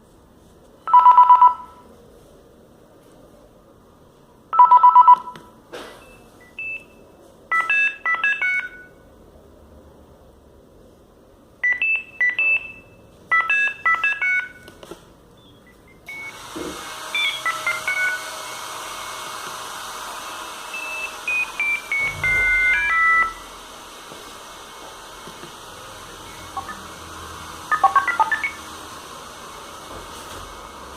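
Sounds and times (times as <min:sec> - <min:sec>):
monophonic phone ringtone beeps: 0:00.9 - 0:01.8, 0:04.6 - 0:05.3, 0:06.5 - 0:09.0, 0:11.6 - 0:14.7, 0:20.8 - 0:23.4, 0:26.3 - 0:26.9, 0:27.7 - 0:28.6.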